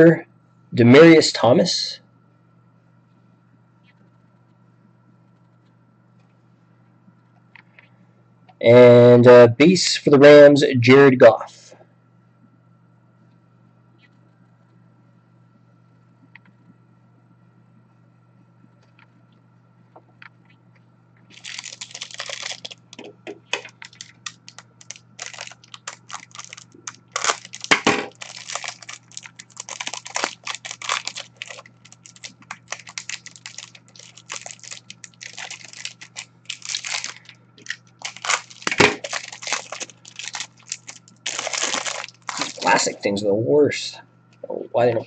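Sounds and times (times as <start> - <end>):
plastic wrapper crinkling and tearing: 21.3 - 43.0.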